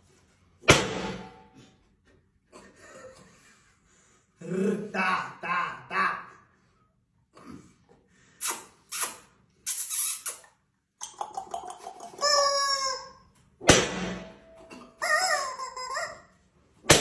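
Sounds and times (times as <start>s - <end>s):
sharp loud thump: 0.7s - 1.5s, 13.6s - 14.5s
chicken squawking: 11.4s - 13.2s, 15.0s - 16.4s.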